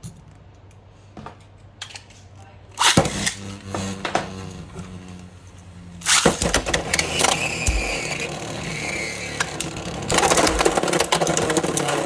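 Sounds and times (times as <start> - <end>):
spinning top launcher ripcord: 2.8 - 5.2, 6.0 - 12.0.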